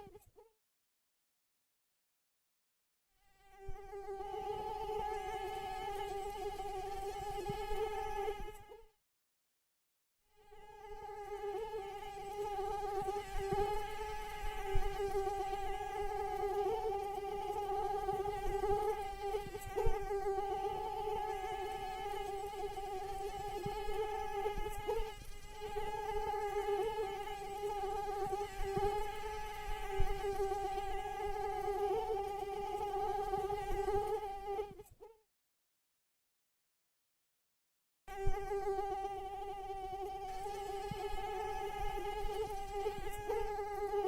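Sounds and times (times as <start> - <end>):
mosquito wings whining: 10.6 - 35.2, 38.2 - 44.0.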